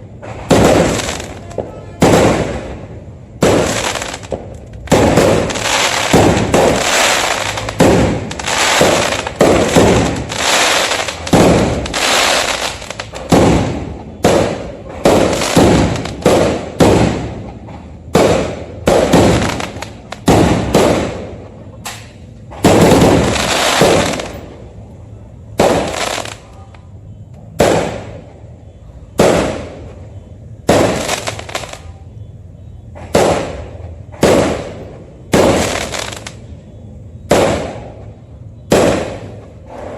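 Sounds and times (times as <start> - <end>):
fireworks bursting: 0.0 - 39.9.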